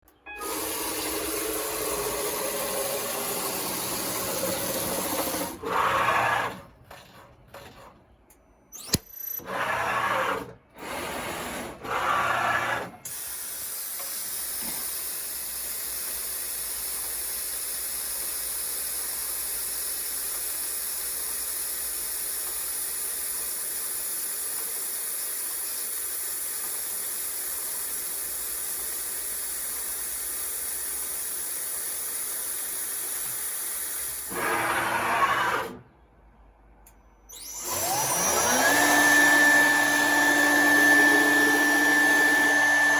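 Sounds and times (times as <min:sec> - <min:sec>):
sharp click: 0:08.3 - 0:09.4
short machine movement sounds: 0:08.7 - 0:15.2
router motor running: 0:37.4 - 0:42.9.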